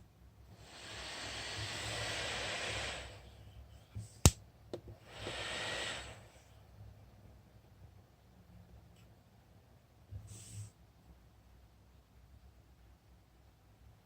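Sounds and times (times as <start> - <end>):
soft hiss: 0.0 - 6.8, 10.0 - 11.1.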